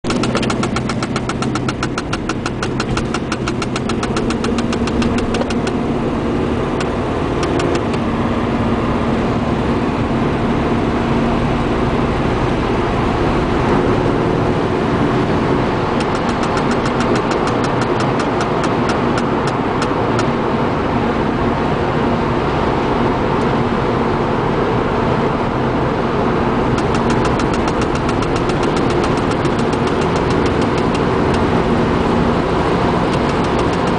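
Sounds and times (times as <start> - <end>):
rapid ticking: 0.0 - 5.8, 6.7 - 8.0, 15.9 - 20.3, 26.7 - 31.5, 33.1 - 33.9
car engine idling: 0.0 - 33.9.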